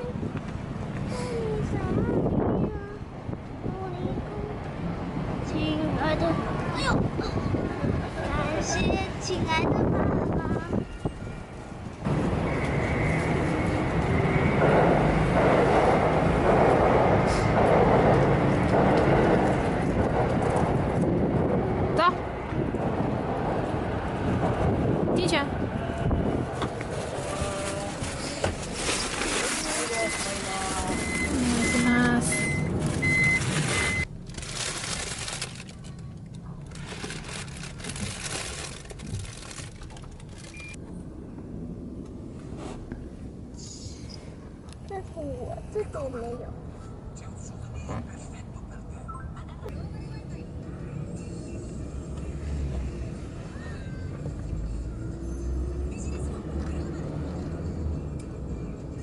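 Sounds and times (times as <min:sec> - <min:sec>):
train rumbling on rails: 0:00.0 - 0:59.0
high electronic beep: 0:30.9 - 0:34.1.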